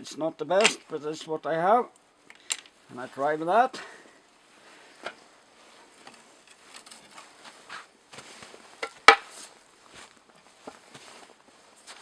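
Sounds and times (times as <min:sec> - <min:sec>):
small metal tools clicking: 0:02.3 - 0:02.7.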